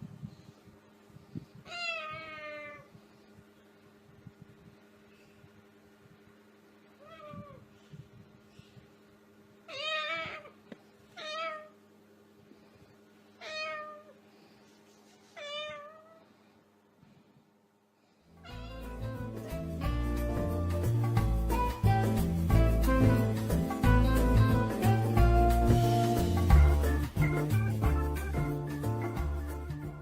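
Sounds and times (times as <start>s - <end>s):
cat meowing: 1.6s - 2.9s, 7.0s - 7.7s, 9.7s - 10.6s, 11.2s - 11.8s, 13.4s - 14.2s, 15.4s - 16.2s, 18.4s - 19.0s
music: 18.4s - 30.0s.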